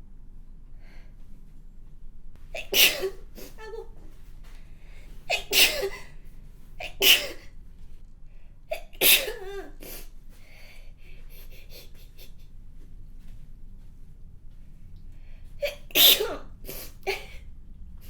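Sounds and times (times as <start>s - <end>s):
woman sneezing: 2.6s - 3.8s, 5.3s - 6.1s, 6.8s - 7.5s, 8.7s - 10.1s, 15.6s - 17.4s.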